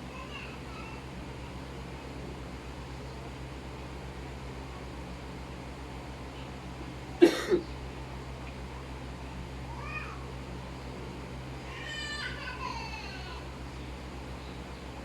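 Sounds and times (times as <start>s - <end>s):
steady low hum: 0.0s - 15.0s
cat meowing: 9.7s - 10.3s.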